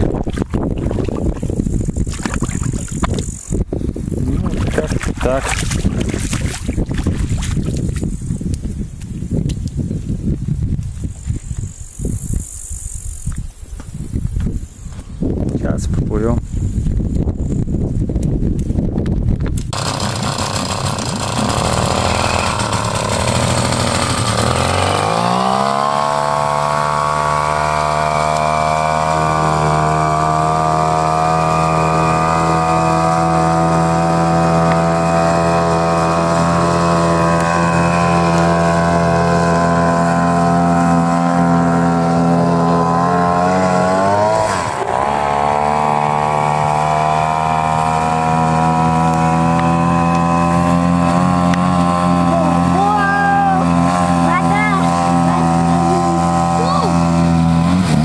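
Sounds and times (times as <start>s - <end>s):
outboard motor running loud: 0.0s - 8.1s, 19.7s - 58.0s.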